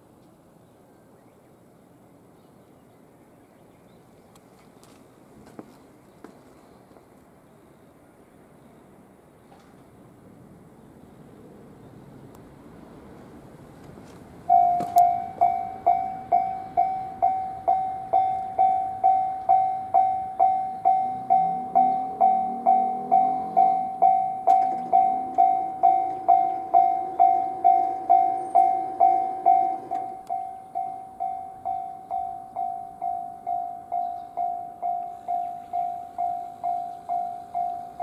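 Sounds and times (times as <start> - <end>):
level-crossing bell clanging: 14.5 - 38.0.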